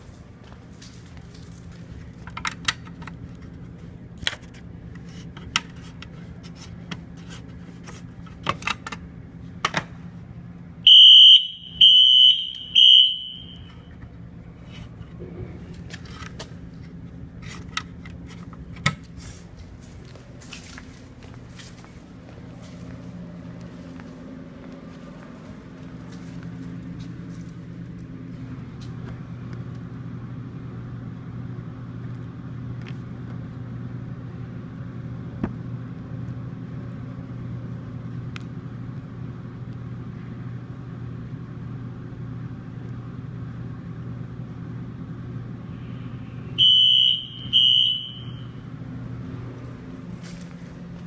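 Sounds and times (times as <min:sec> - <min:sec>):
steady low hum: 0:00.0 - 0:51.0
fire alarm blasts: 0:10.8 - 0:13.9, 0:46.6 - 0:48.7.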